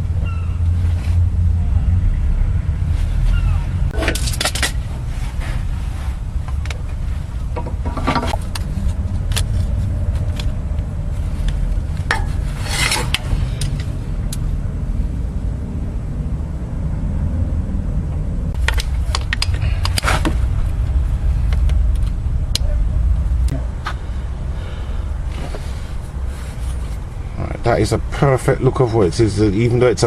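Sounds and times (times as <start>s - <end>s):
low rumble: 0.0s - 29.3s
hand tools scraping metal: 12.1s - 13.9s.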